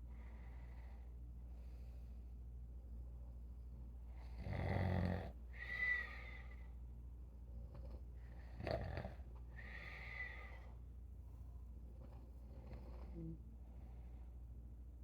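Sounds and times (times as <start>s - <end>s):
airy whistling breath: 5.6s - 6.6s, 9.6s - 10.7s.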